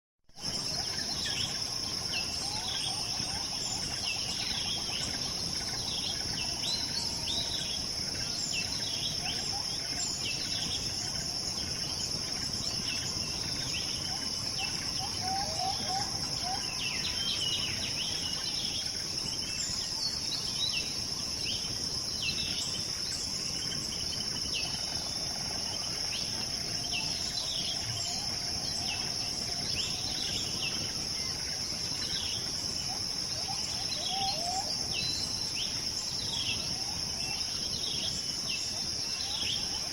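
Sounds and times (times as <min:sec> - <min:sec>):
insect drone: 0:00.4 - 0:39.9.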